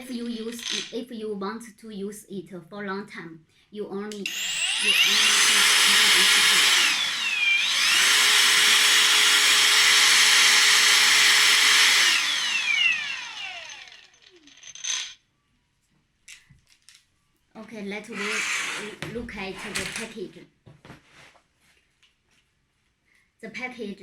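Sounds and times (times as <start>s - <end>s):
angle grinder spinning: 0.0s - 1.0s, 4.2s - 15.2s, 18.1s - 20.1s.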